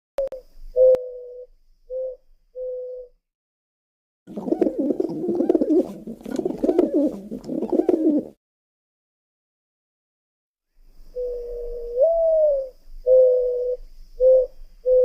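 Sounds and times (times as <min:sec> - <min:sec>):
dove cooing: 0:00.2 - 0:03.2, 0:04.3 - 0:08.4, 0:11.1 - 0:15.0.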